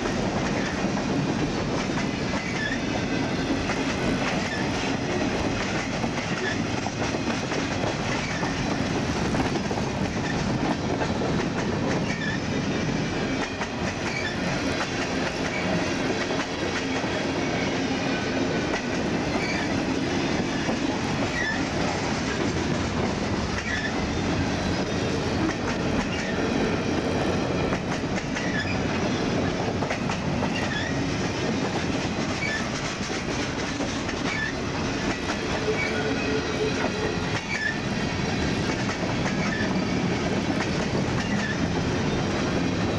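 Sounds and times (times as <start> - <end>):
train wheels clicking over rail joints: 0.0 - 42.9
high wheel squeals: 35.6 - 37.8.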